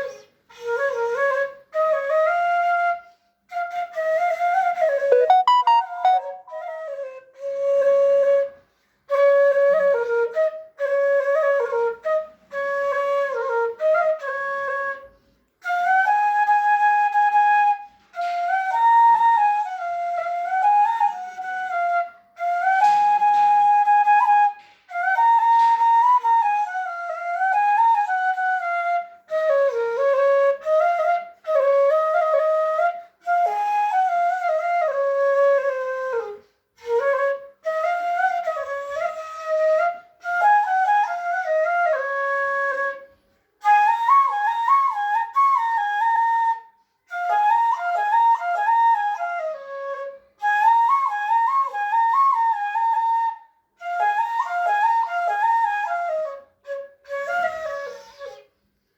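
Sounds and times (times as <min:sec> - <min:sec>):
wind instrument solo melody: 0:05.0 - 0:07.1.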